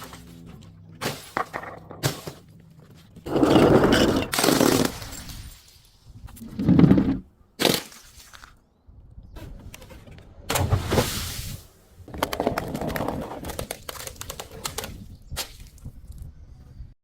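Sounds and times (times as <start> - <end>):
objects crushing and cracking: 12.1 - 15.8.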